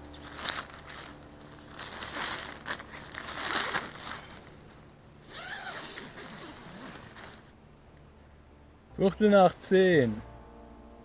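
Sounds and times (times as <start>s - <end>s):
crinkly rustling of camping gear: 0.0s - 7.5s.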